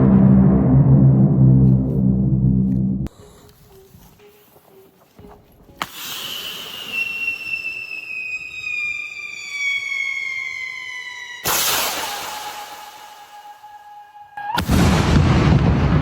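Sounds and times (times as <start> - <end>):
firework launch pop: 5.8 - 7.3, 11.4 - 13.2
falling firework whistle: 5.8 - 15.6
firework bang: 9.6 - 13.4, 14.5 - 16.0.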